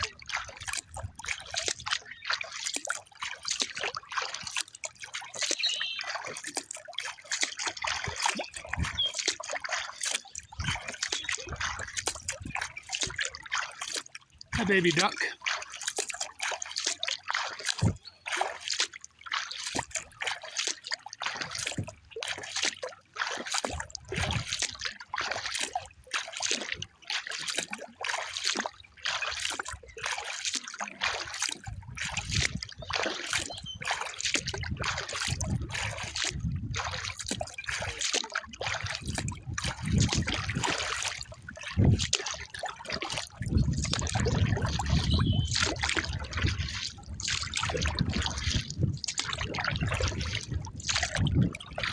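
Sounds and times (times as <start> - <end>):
wind rumble on microphone: 0.0 - 1.9, 8.0 - 9.1, 10.4 - 13.2, 17.8 - 18.1, 21.7 - 22.0, 23.7 - 24.6, 31.6 - 37.9, 38.6 - 51.9
water splashing around kayak hull: 0.0 - 51.9.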